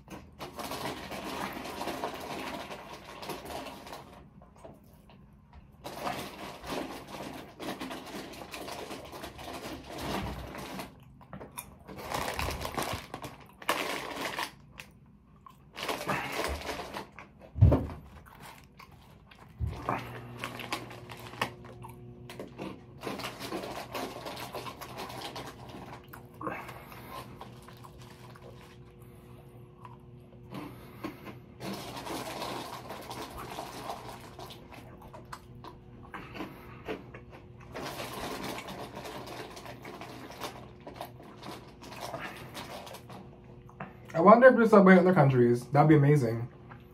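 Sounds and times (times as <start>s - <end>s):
food wrappers crinkling: 0.0s - 29.1s, 29.8s - 43.7s
steady low hum: 0.0s - 46.9s
chewing: 13.4s - 17.4s, 18.1s - 44.1s.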